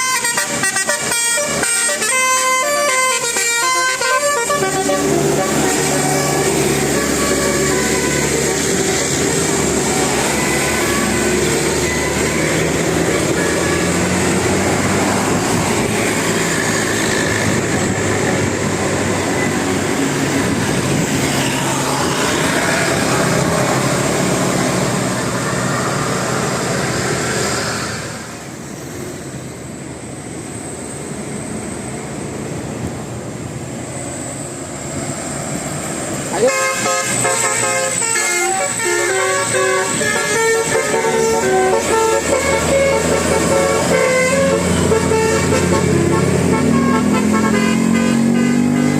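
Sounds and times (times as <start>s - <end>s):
musical bus horn: 0.0s - 18.4s, 36.3s - 48.9s
heavy vehicles roaring past: 0.0s - 48.9s.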